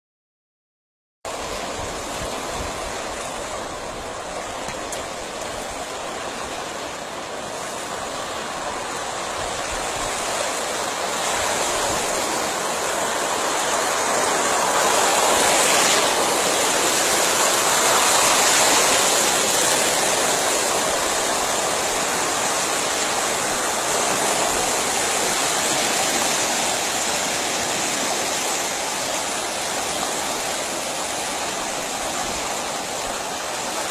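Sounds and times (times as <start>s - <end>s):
water rushing: 1.3s - 33.9s.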